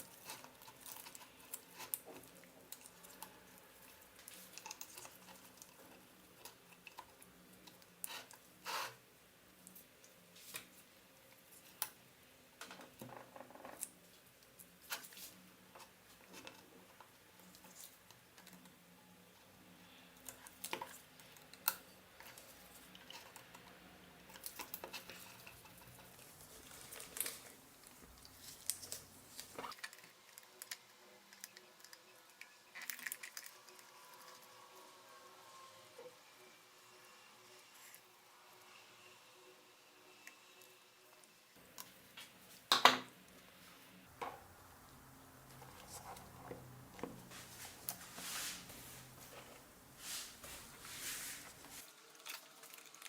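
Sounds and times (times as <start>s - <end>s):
hands handling parts and tools: 45.3s - 51.8s.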